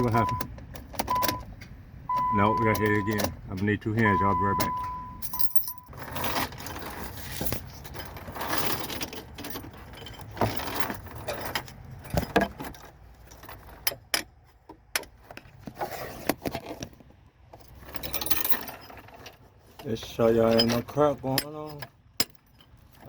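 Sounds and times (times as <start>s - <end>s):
keys jangling: 4.1s - 12.4s.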